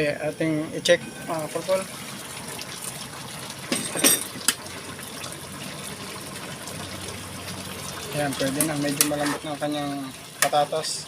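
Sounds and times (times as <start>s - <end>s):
pot bubbling: 0.0s - 11.0s
pot clinks: 3.7s - 4.5s.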